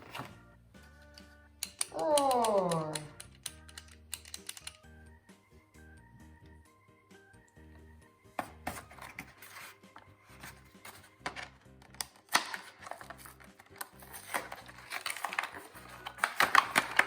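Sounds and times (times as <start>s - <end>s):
quiet background music: 0.0s - 17.0s
scissors snipping packaging: 1.6s - 4.8s, 10.4s - 17.0s
plastic crinkling: 10.4s - 17.0s.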